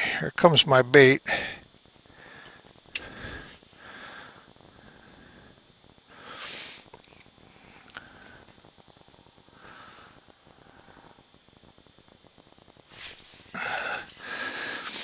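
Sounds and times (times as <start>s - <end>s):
person sniffing: 6.2s - 6.9s, 12.9s - 15.0s.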